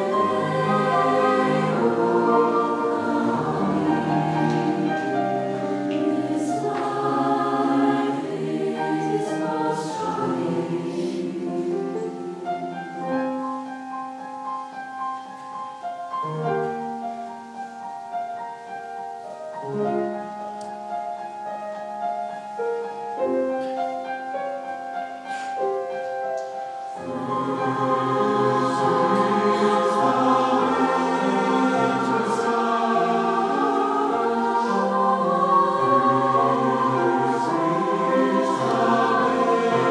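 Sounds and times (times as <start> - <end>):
choir singing: 0.0 - 13.8, 26.7 - 39.9.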